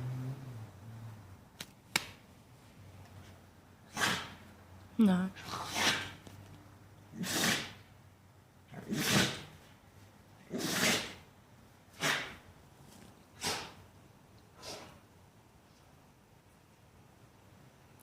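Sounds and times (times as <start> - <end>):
pet sneezing: 3.9 - 4.4, 5.4 - 6.2, 7.1 - 7.9, 8.8 - 9.6, 10.5 - 11.2, 11.9 - 12.4, 13.4 - 13.8, 14.6 - 15.0.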